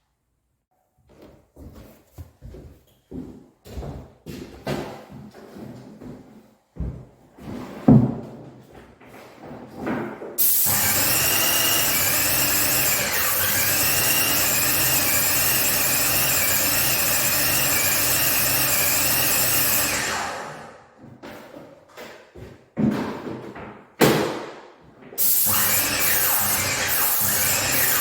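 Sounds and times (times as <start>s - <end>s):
power tool whining: 10.4s - 20.9s, 25.2s - 28.0s.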